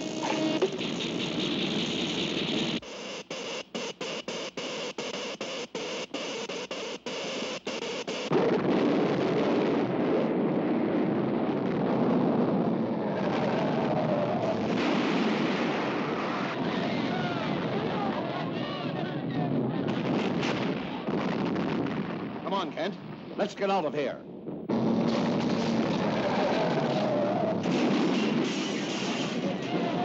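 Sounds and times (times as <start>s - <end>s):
stuttering hissing noise: 0.0s - 8.4s
continuous rumble: 24.2s - 30.0s.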